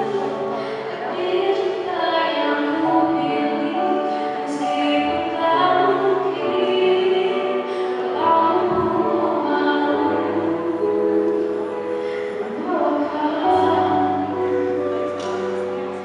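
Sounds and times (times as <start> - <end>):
young voices singing in harmony: 0.0 - 16.0.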